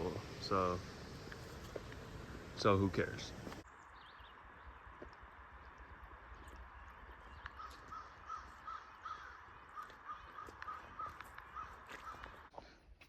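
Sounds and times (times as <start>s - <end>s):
rushing hiss: 0.0s - 3.6s
low wind rumble: 0.0s - 12.5s
bird calling repeated notes: 7.3s - 12.5s.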